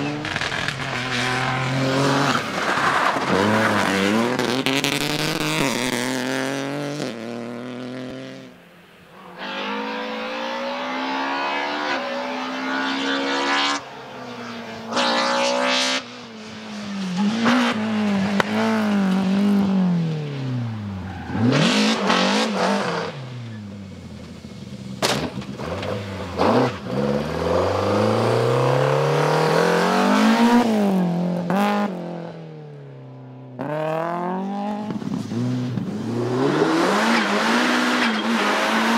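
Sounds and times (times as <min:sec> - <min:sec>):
rally car engines revving: 0:00.0 - 0:08.6, 0:09.2 - 0:32.4, 0:33.5 - 0:38.9.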